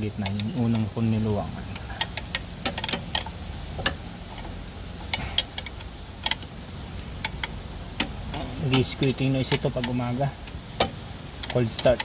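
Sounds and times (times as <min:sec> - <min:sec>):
steady low rumble: 0:00.0 - 0:12.0
wrench clicking on metal bolt: 0:00.2 - 0:00.9, 0:01.7 - 0:04.0, 0:10.8 - 0:12.0.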